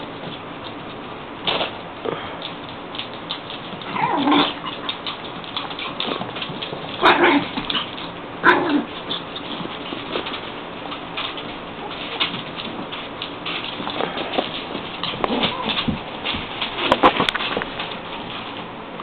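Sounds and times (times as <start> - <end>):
wolves and puppies calling: 7.0 - 9.3.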